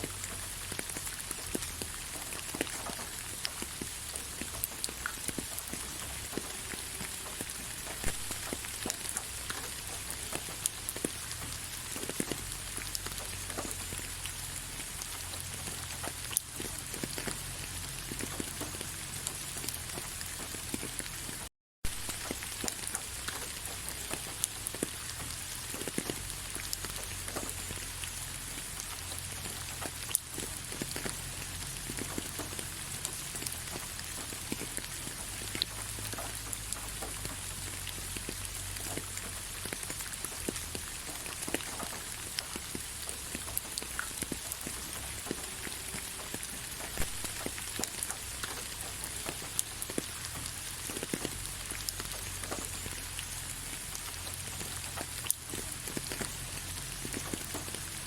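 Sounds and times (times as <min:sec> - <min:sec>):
gentle steady rain: 0:00.0 - 0:58.0
raindrops ticking on a surface: 0:00.0 - 0:58.0.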